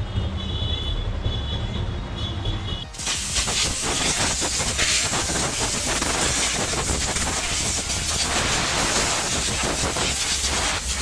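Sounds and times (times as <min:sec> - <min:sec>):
air blow gun hissing: 0:03.0 - 0:11.0.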